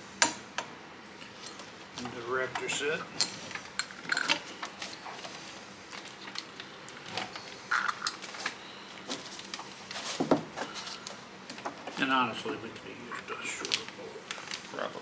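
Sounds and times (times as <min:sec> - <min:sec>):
metal tools clinking: 0:01.3 - 0:05.3, 0:05.9 - 0:08.5.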